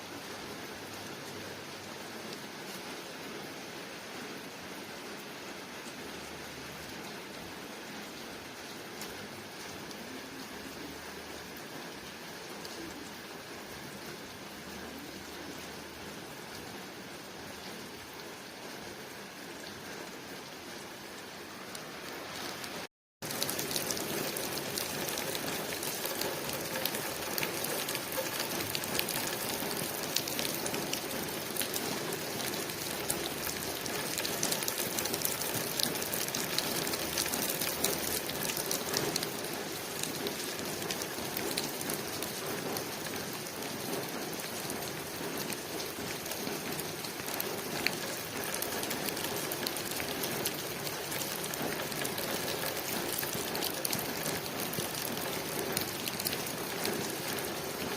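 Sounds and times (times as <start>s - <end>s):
rain on a window pane: 0.0s - 57.9s.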